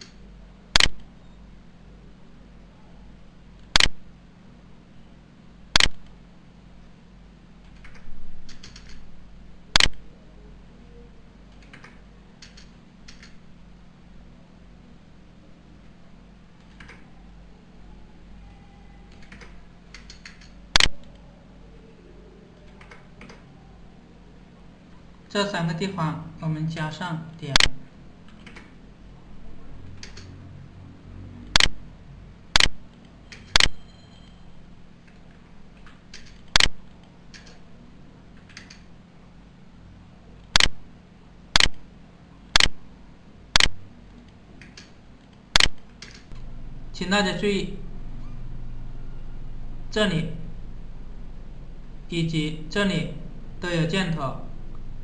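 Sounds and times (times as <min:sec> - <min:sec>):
low hum: 0:00.0 - 0:55.0
sharp loud click: 0:00.8 - 0:01.0, 0:03.7 - 0:04.0, 0:05.8 - 0:06.0, 0:32.5 - 0:32.8, 0:33.5 - 0:33.8, 0:36.5 - 0:36.8, 0:40.5 - 0:40.8, 0:41.6 - 0:41.8, 0:42.5 - 0:42.8, 0:43.6 - 0:43.8, 0:45.6 - 0:46.4
computer input clicks: 0:00.8 - 0:01.1, 0:03.7 - 0:04.0, 0:05.8 - 0:06.1, 0:07.6 - 0:09.1, 0:09.8 - 0:10.0, 0:11.5 - 0:13.4, 0:16.6 - 0:17.0, 0:19.1 - 0:21.2, 0:22.6 - 0:23.4, 0:27.5 - 0:28.8, 0:29.9 - 0:30.3, 0:31.5 - 0:31.8, 0:32.5 - 0:33.8, 0:35.8 - 0:37.6, 0:38.4 - 0:38.9, 0:40.5 - 0:40.8, 0:41.6 - 0:41.8, 0:42.5 - 0:42.8, 0:43.5 - 0:43.8, 0:44.6 - 0:46.4.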